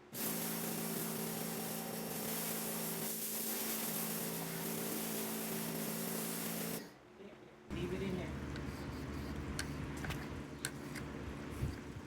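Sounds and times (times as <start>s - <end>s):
pressure washer motor humming: 0.2s - 6.8s
water spray hissing: 0.2s - 6.8s.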